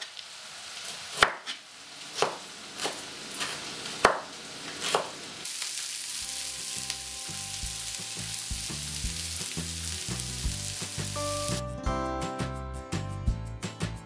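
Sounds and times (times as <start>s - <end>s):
food sizzling in a pan: 0.0s - 11.6s
background music: 6.3s - 14.0s.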